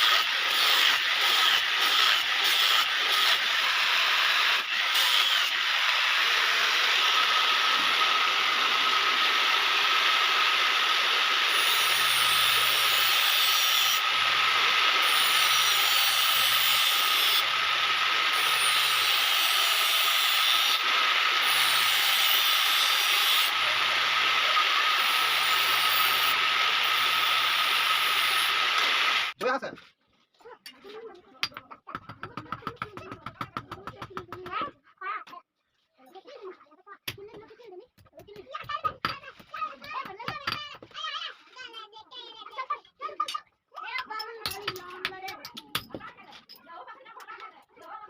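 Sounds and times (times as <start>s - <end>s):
hissing machine noise: 0.0s - 29.4s.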